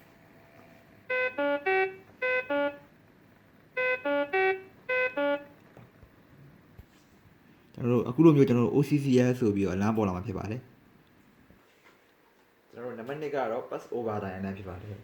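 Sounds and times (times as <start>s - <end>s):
syringe pump alarm beeps: 1.1s - 2.8s, 3.8s - 5.5s.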